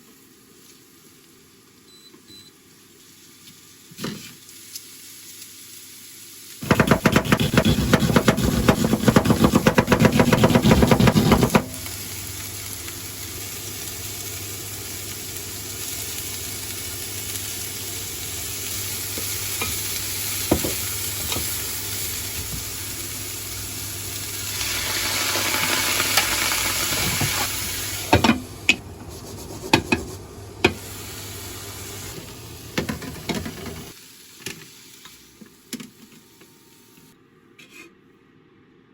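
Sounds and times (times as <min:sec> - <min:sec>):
food sizzling in frying pan: 0:02.6 - 0:36.9.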